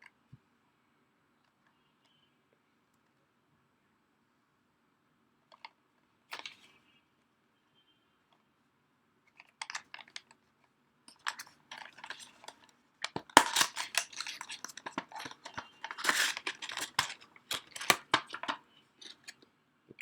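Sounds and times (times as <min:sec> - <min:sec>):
packaging crackling and scraping: 0:11.1 - 0:19.4.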